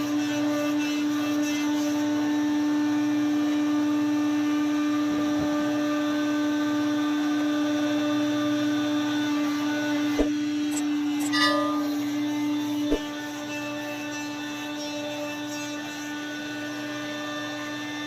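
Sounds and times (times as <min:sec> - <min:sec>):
sawmill machinery whining: 0:08.6 - 0:18.0.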